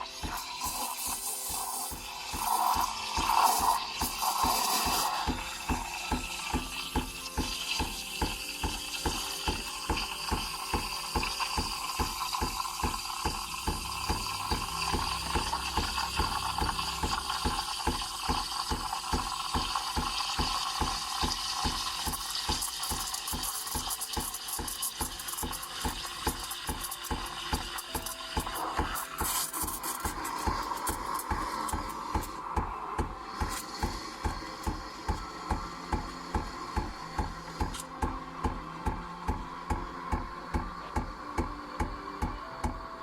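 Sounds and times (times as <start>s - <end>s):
background music with steady beat: 0.0s - 43.0s
espresso machine rattling: 0.2s - 32.7s.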